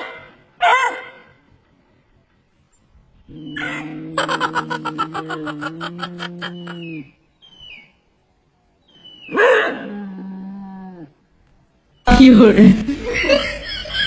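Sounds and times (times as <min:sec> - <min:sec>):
dog howling: 0:03.3 - 0:07.1.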